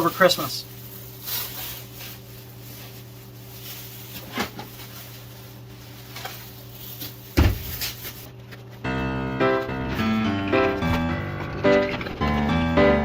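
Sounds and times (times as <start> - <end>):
storage bins knocking: 7.3 - 8.0.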